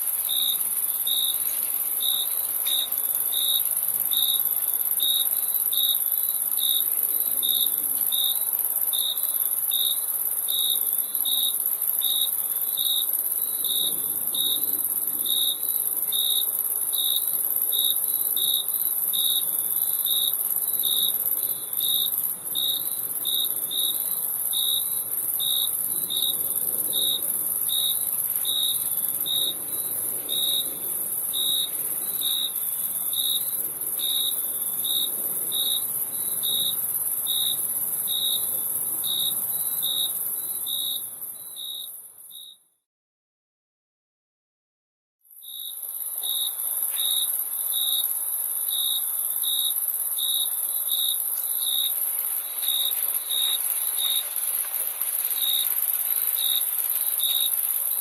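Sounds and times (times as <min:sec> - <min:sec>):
crickets chirping: 0:00.0 - 0:42.6, 0:45.4 - 0:58.0
high-pitched insect trill: 0:45.4 - 0:58.0.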